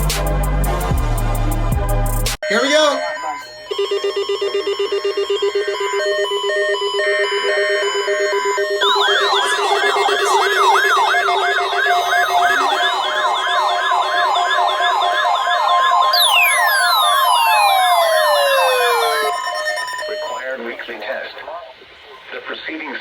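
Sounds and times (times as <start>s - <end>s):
rising and falling siren tone: 5.4s - 20.4s
steady alert tone: 7.0s - 20.5s
long falling electronic glides: 8.8s - 20.3s.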